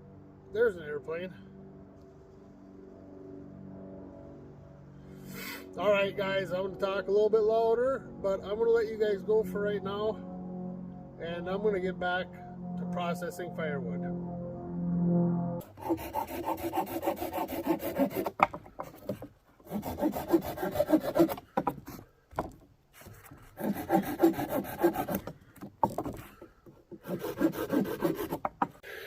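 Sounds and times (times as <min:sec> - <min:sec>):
hand saw cutting firewood: 0:15.6 - 0:29.0.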